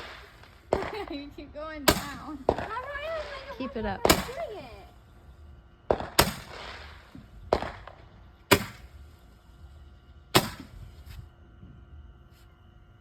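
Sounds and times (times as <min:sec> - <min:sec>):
firework pops with echo: 0:01.9 - 0:03.4, 0:04.0 - 0:04.6, 0:05.9 - 0:09.0, 0:10.4 - 0:10.8.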